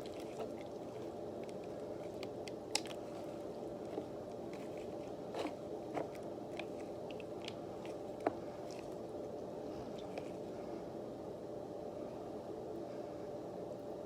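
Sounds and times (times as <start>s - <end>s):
slime being stirred and squished: 0.0s - 10.7s.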